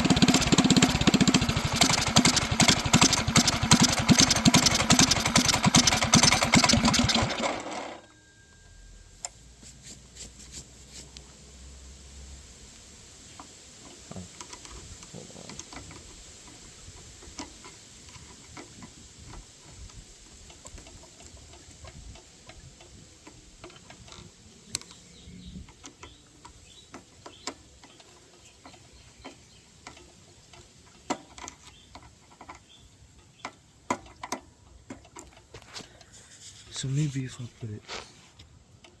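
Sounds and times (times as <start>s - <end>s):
clicks and taps of hand tools: 25.8s - 32.6s, 33.4s - 35.9s.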